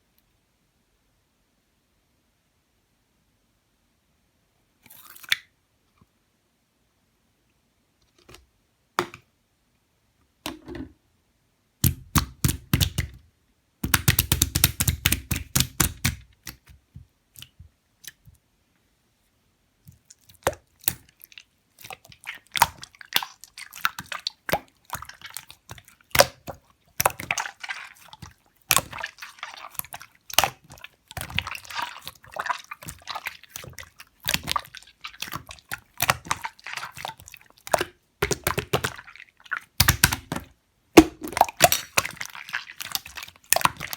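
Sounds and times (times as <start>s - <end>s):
slime squished by hand: 13.8s - 16.7s, 19.9s - 43.9s.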